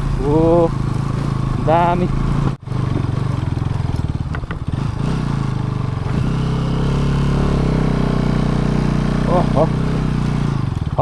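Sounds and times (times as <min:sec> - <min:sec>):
motorcycle engine running: 0:00.0 - 0:11.0
knocks and rattles: 0:02.2 - 0:04.9.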